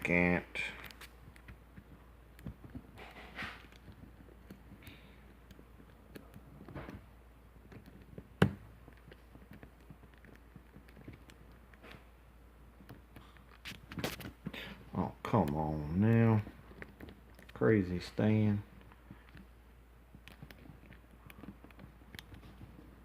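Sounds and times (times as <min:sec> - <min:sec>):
small lock parts clicking: 0:00.7 - 0:12.1, 0:15.4 - 0:17.6, 0:18.7 - 0:22.7.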